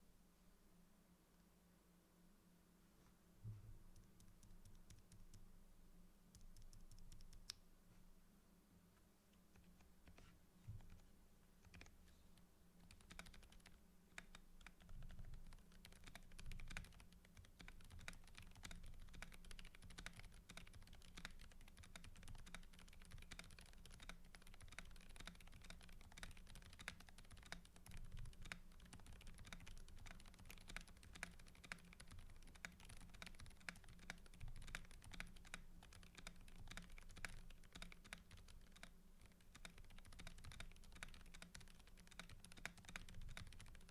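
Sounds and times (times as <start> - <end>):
faint steady hum: 0.0 - 43.9
mechanical keyboard typing: 6.4 - 7.6, 10.8 - 11.0, 11.6 - 12.0, 12.8 - 43.9.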